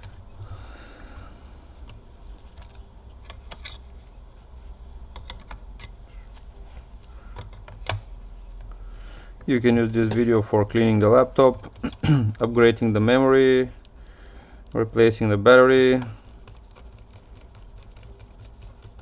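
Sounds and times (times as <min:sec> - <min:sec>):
clicks of plastic laptop parts: 0:07.1 - 0:08.0.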